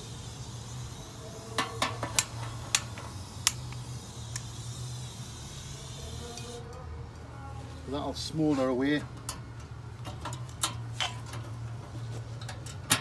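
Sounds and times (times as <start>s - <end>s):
gas blowtorch hissing: 0.0s - 6.6s.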